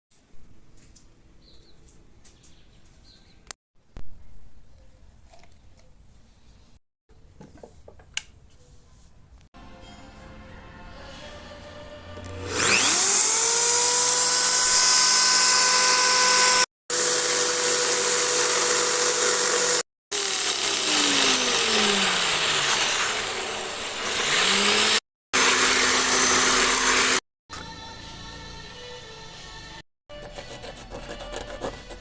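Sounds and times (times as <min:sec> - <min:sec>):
quiet background music: 0:07.2 - 0:12.6, 0:27.5 - 0:32.0
electric drill motor whining: 0:12.2 - 0:27.2.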